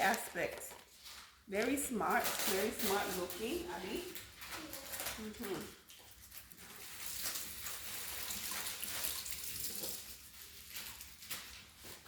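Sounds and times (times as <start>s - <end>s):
water running from tap: 6.8s - 11.0s.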